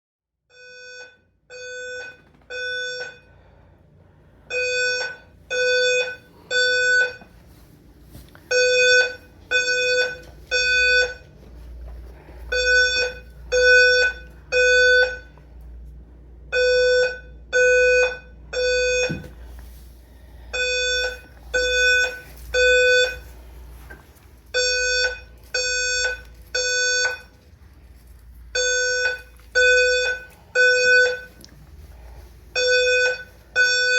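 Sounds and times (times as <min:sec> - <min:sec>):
fire alarm beeping: 0:00.5 - 0:03.4, 0:04.5 - 0:07.4, 0:08.5 - 0:11.4, 0:12.4 - 0:15.4, 0:16.5 - 0:19.4, 0:20.5 - 0:23.4, 0:24.5 - 0:27.4, 0:28.5 - 0:31.4, 0:32.5 - 0:33.9.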